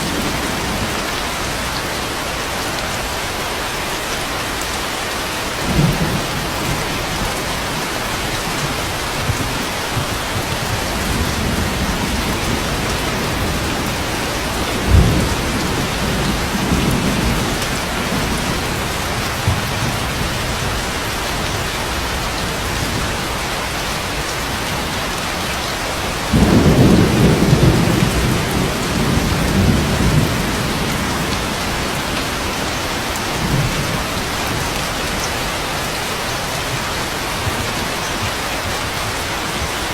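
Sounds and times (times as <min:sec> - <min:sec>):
steady rain: 0:00.0 - 0:39.9
thunder rumbling: 0:05.5 - 0:23.4, 0:26.0 - 0:35.7.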